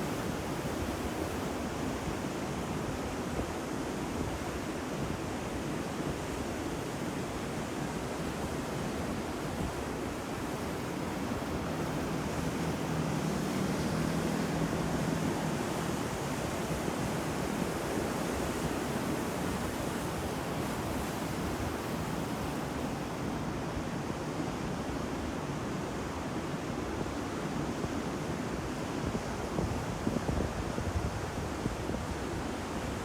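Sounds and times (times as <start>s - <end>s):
waves breaking and washing ashore: 0.0s - 33.0s
wind noise on microphone: 28.4s - 33.0s.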